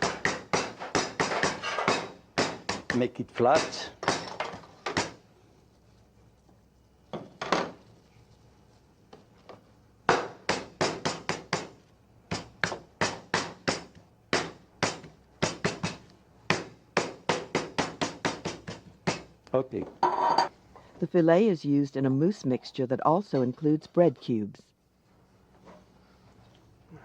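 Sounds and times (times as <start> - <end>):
meat being pounded: 0.0 - 3.0, 10.1 - 19.3.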